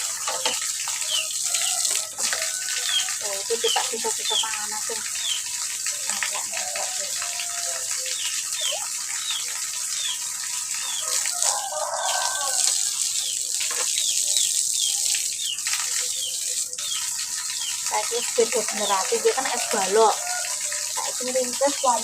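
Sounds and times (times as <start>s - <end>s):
water running from a tap: 0.0s - 22.0s.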